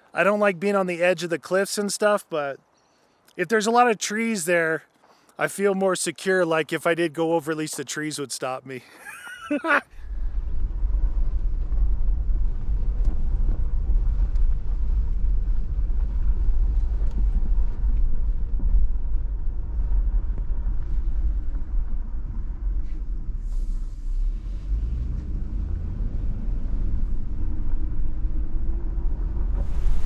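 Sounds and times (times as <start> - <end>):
engine and tyres rumble: 9.9 - 30.0.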